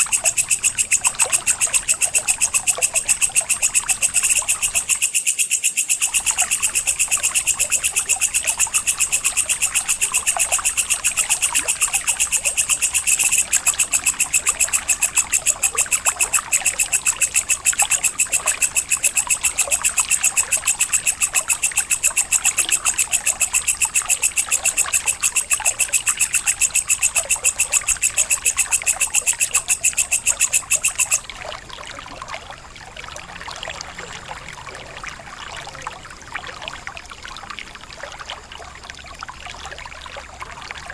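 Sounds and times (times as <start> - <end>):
insect chirping in fast pulses: 0.0 - 31.5
faint scattered insect chirping: 0.0 - 40.9.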